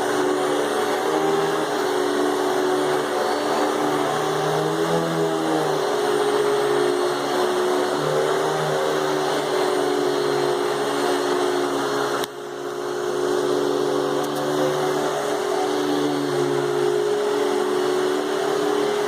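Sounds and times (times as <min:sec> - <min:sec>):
vacuum cleaner whining: 0:00.0 - 0:19.0.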